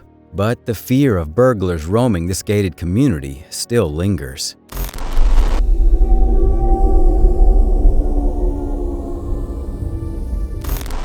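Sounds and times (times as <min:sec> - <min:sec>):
dark ambient music: 0:00.0 - 0:11.0.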